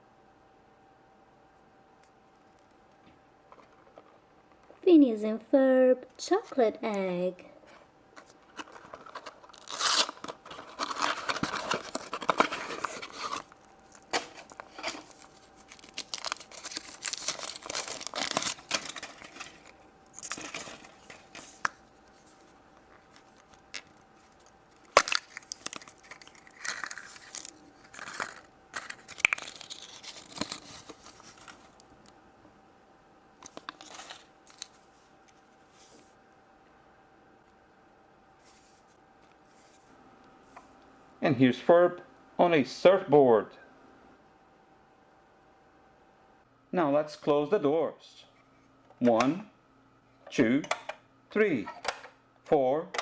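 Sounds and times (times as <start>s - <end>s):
foil wrapper tearing and crinkling: 8.5s - 21.8s, 23.0s - 31.8s, 33.5s - 34.8s.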